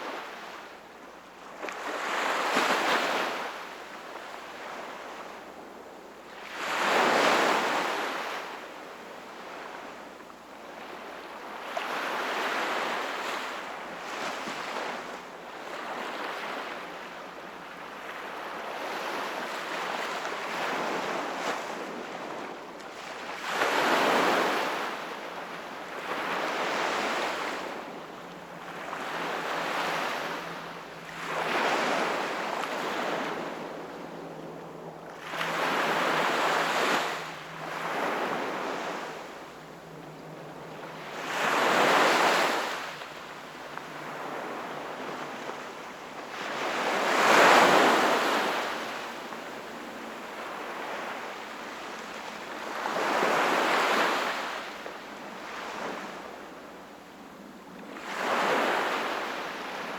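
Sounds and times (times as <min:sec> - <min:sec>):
sea waves breaking on shore: 0:00.0 - 0:59.9.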